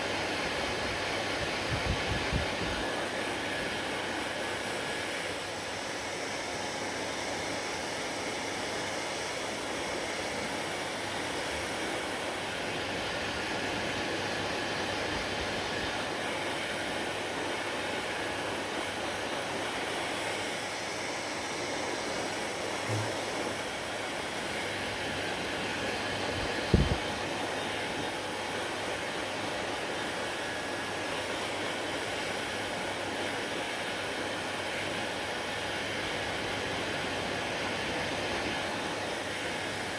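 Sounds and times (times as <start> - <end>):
hair dryer blowing: 0.0 - 39.9.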